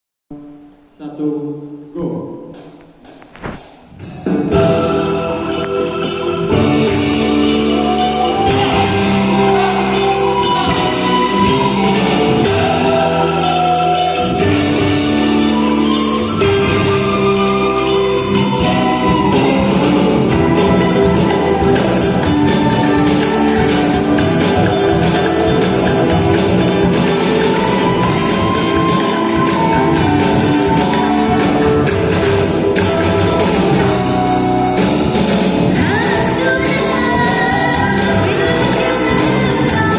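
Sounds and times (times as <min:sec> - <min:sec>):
angklung ensemble chords: 0:04.5 - 0:39.9.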